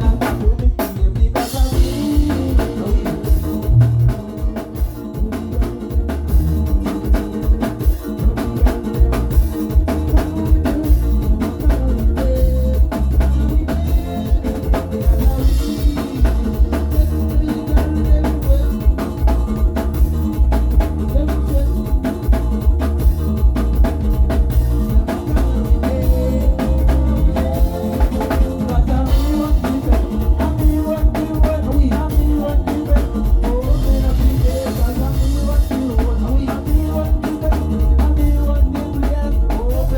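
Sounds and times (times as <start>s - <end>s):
band music melody: 0.0s - 39.9s
drum kit playing a steady beat: 0.0s - 39.9s
person singing: 0.0s - 39.9s.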